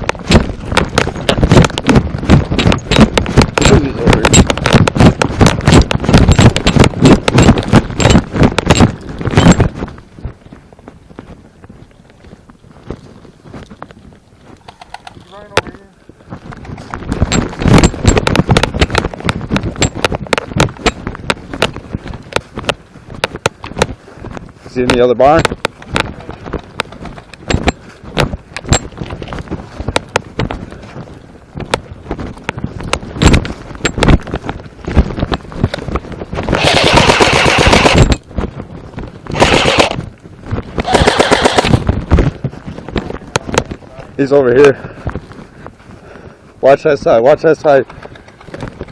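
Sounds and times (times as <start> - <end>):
irregular knocks and rattles: 0.0 - 10.0, 16.3 - 30.9, 31.6 - 43.8
sharp clicks and thuds: 0.0 - 44.4, 45.0 - 46.0, 47.0 - 48.9
airsoft gun firing bursts: 36.6 - 38.1, 39.3 - 40.0, 40.8 - 41.8.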